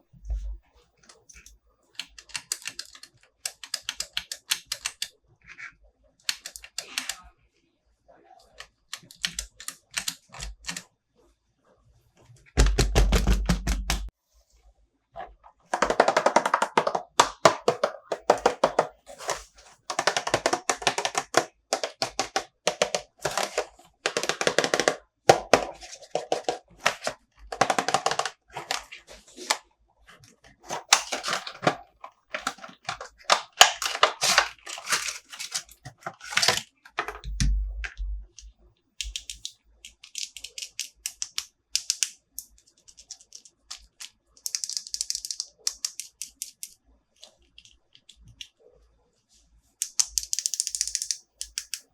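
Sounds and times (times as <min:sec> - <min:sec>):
plastic toy packaging crinkling: 0:15.7 - 0:29.6, 0:30.6 - 0:37.3.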